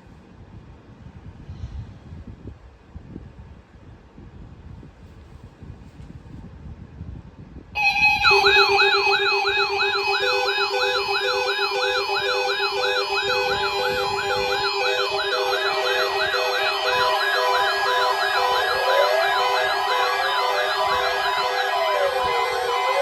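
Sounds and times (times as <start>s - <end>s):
electronic siren yelp: 7.8s - 23.0s
regular beeping tone: 7.8s - 23.0s
steady alarm tones: 7.8s - 23.0s.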